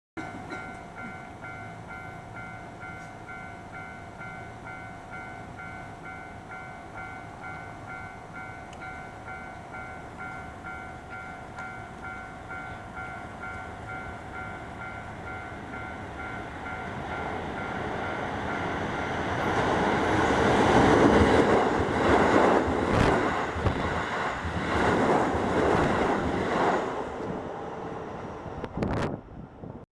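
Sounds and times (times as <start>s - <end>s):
level crossing warning bell: 0.2s - 22.2s
electric train passing: 0.2s - 29.8s.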